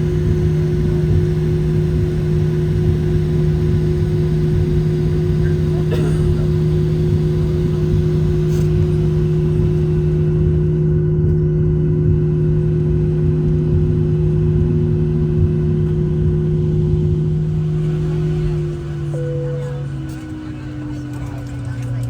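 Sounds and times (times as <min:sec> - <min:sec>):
jet engines droning at idle: 0:00.0 - 0:22.0
steady low hum: 0:00.0 - 0:22.0
higher hum: 0:12.3 - 0:22.0.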